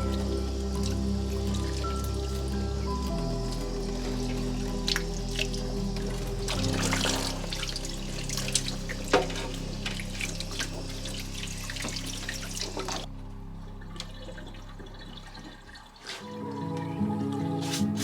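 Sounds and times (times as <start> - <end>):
water running from tap: 0.0 - 13.1
soft background music: 0.0 - 18.0.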